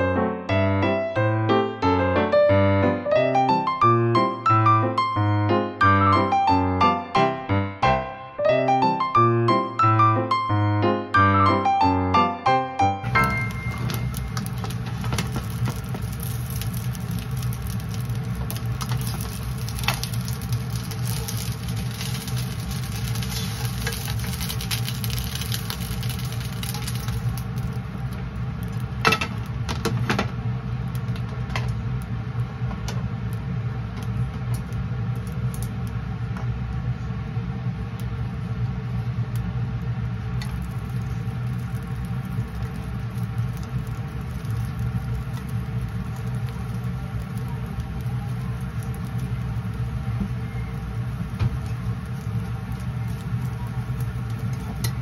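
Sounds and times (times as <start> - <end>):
low mechanical hum: 0.0 - 55.0.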